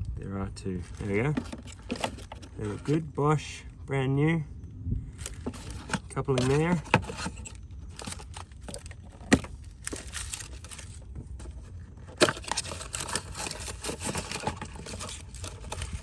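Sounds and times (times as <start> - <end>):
packaging crinkling and rustling: 0.8 - 3.0, 5.2 - 16.0.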